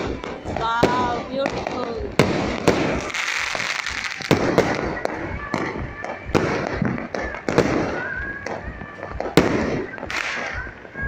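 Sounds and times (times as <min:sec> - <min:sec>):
crackling hiss of fireworks: 0:00.0 - 0:11.0
firecrackers banging: 0:00.0 - 0:11.0.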